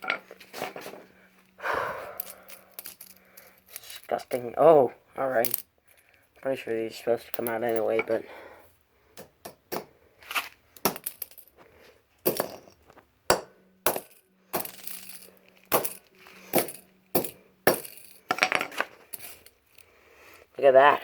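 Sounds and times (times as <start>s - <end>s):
sharp metallic clinks and knocks: 0.0s - 1.1s, 2.1s - 4.6s, 7.2s - 8.3s, 10.8s - 11.6s, 12.2s - 19.9s.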